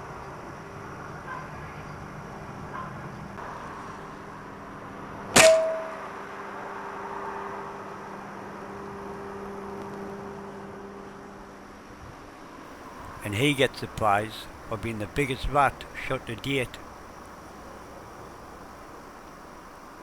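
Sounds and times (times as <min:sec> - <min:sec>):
steady low hum: 0:12.8 - 0:20.0.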